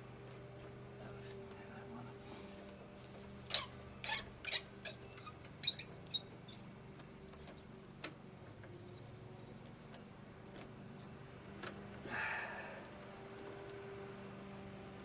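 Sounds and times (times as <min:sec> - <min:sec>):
faint steady hum: 0:00.0 - 0:15.0
small plastic squeaks: 0:03.4 - 0:06.7.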